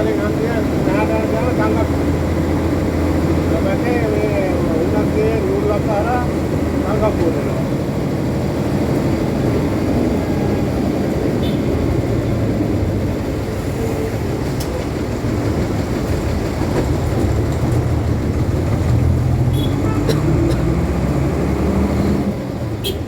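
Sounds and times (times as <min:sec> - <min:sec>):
road noise: 0:00.0 - 0:23.0
vehicle engine rumble: 0:00.0 - 0:23.0.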